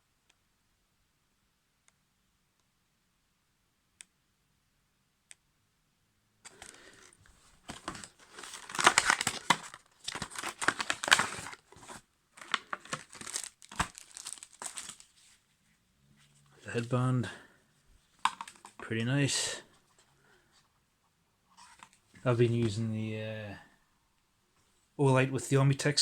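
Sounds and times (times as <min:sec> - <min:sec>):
packaging crinkling and tearing: 0:06.5 - 0:15.2, 0:18.2 - 0:18.8.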